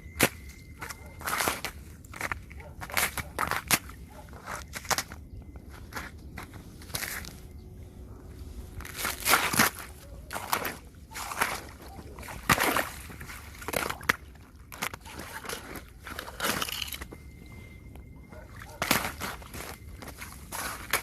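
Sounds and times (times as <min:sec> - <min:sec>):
sharp taps on ice: 0:01.2 - 0:04.0, 0:18.8 - 0:20.2
scraping on icy snow: 0:08.8 - 0:11.7, 0:18.9 - 0:21.0.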